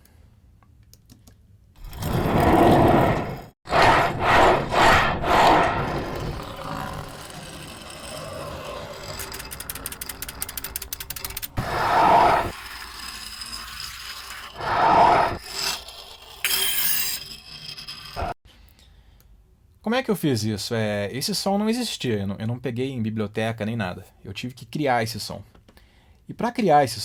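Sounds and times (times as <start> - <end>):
cartoon cars rolling and grinding: 1.8 - 18.4.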